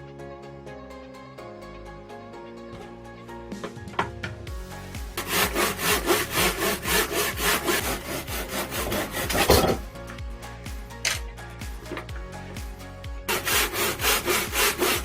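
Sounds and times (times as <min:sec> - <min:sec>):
hand saw cutting wood: 0:05.1 - 0:09.9, 0:13.3 - 0:15.0.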